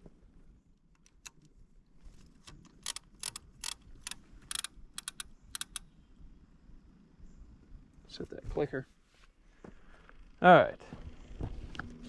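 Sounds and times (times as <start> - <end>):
fishing reel clicking: 2.8 - 5.8.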